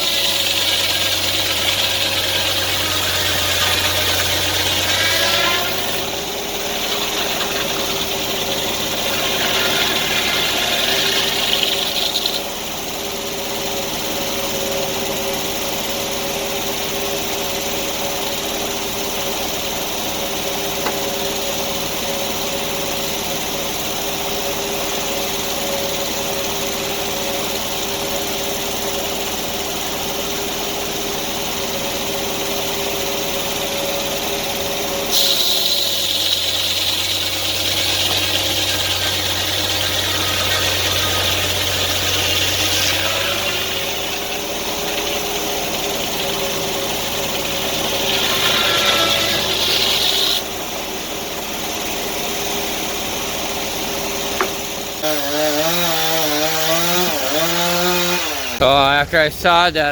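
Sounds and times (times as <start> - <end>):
saw blade cutting log: 0.0 - 14.7, 20.2 - 21.4, 31.3 - 50.5, 53.5 - 59.9
sawmill engine running: 0.0 - 59.9.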